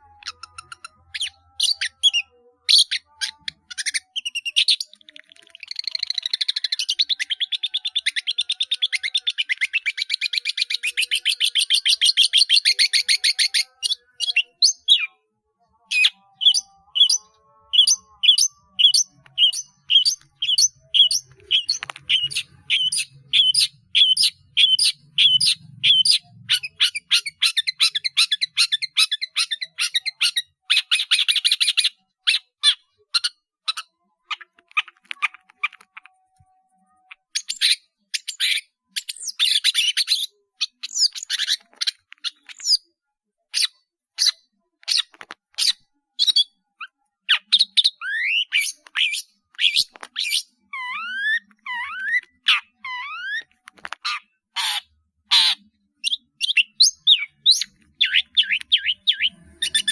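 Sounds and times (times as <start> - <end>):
shrike singing: 15.8 - 30.1.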